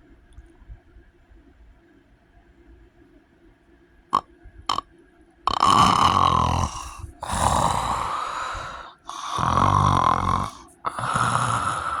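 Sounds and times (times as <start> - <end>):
heavy rattling snores: 5.5 - 12.0
noisy breathing: 5.5 - 12.0.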